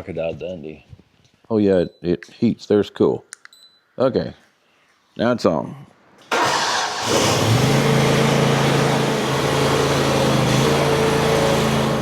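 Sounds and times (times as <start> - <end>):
mower engine starting: 6.3 - 12.0.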